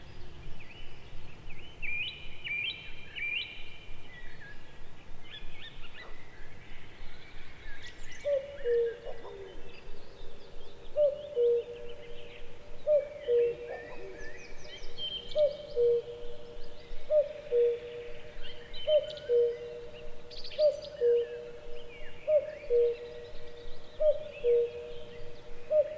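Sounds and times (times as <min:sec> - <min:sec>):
songbirds chirping and trilling: 0:05.4 - 0:25.9
cuckoo calling: 0:11.0 - 0:25.9.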